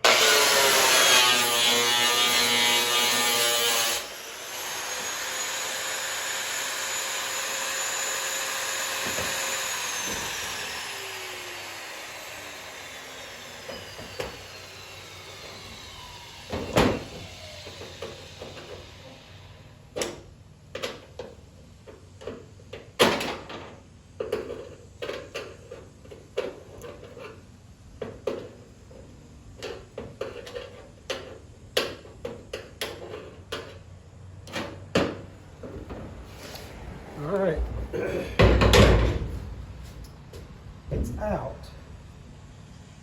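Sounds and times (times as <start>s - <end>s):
power tool winding down: 0.0s - 19.8s.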